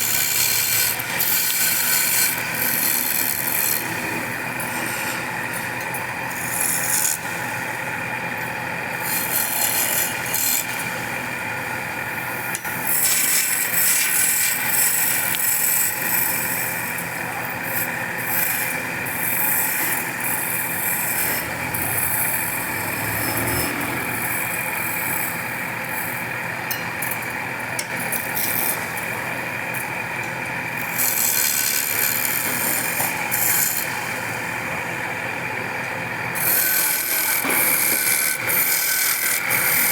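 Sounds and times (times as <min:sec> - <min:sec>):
power tool humming: 0:00.0 - 0:39.9
tool scraping wood: 0:36.4 - 0:39.9.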